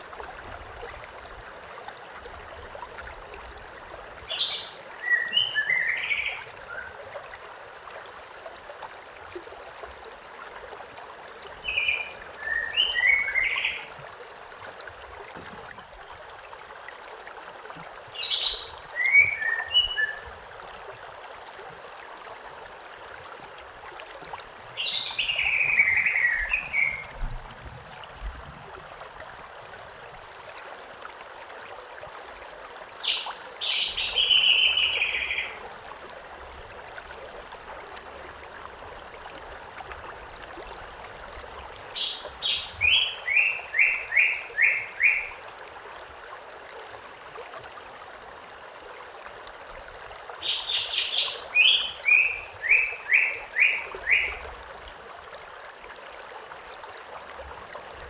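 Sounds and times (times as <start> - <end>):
stream flowing: 0.0 - 58.0
songbird singing: 4.3 - 7.0, 11.6 - 13.9, 18.1 - 20.3, 24.7 - 27.2, 33.0 - 35.6, 41.9 - 45.4, 50.4 - 54.5.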